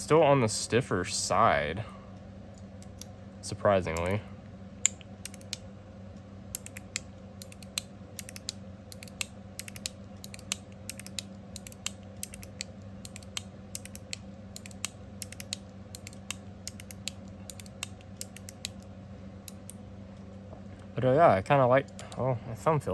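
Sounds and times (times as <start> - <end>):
fidget slider clicking: 6.6 - 18.8.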